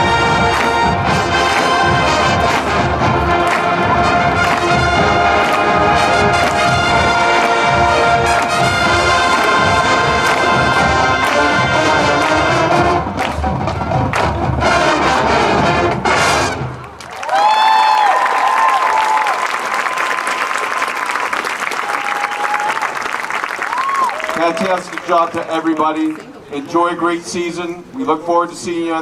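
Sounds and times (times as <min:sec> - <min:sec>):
band accented hits: 0:00.0 - 0:17.0
marching band brass and drums: 0:00.0 - 0:17.1.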